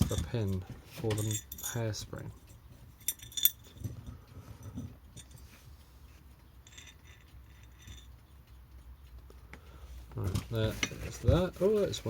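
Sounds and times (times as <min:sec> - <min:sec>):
metallic clicks of clock parts: 0:00.0 - 0:12.0.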